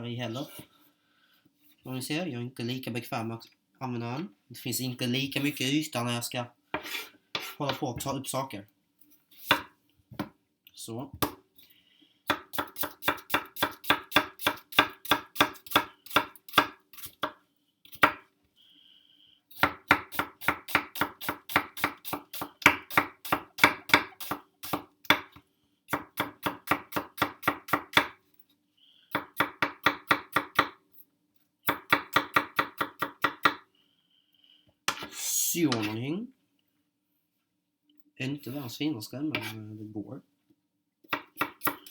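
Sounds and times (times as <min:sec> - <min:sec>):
knife chopping food: 0:12.3 - 0:18.2, 0:19.6 - 0:28.2, 0:29.1 - 0:30.8, 0:31.7 - 0:33.6, 0:41.1 - 0:41.9.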